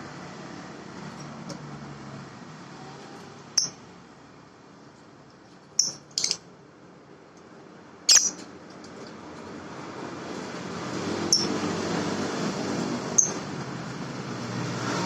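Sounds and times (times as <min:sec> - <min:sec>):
small bird chirping: 0:03.6 - 0:03.8, 0:05.8 - 0:06.4, 0:08.1 - 0:08.4, 0:11.3 - 0:11.5, 0:13.2 - 0:13.4.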